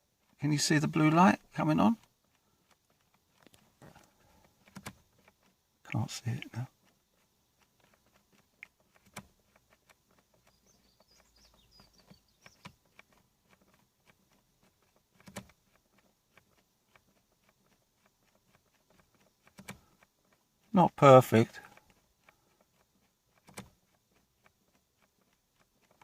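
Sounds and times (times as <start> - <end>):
faint irregular clicks: 0.0 - 26.0
faint high chirp: 10.5 - 12.8.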